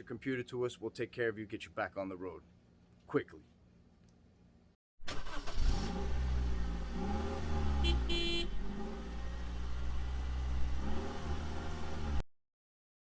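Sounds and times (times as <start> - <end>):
car engine revving: 5.1 - 12.2.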